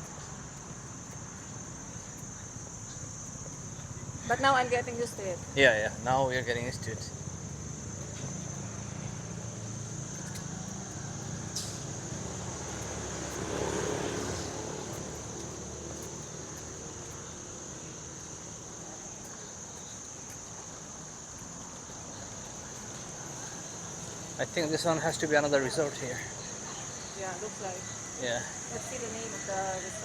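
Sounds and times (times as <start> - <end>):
low traffic hum: 0.0 - 30.0
vehicle engine passing: 10.6 - 17.0.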